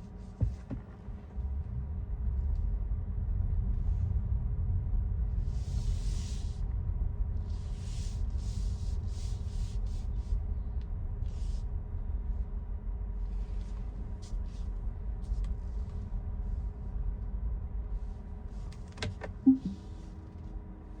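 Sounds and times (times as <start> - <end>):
car road rumble: 0.0 - 20.4
brief sharp sound: 19.5 - 19.8.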